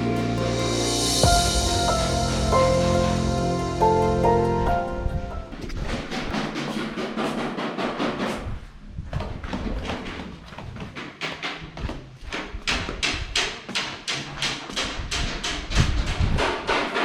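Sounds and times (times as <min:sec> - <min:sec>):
music with fast percussive beat: 0:00.0 - 0:05.1
low sustained bass: 0:00.0 - 0:05.6.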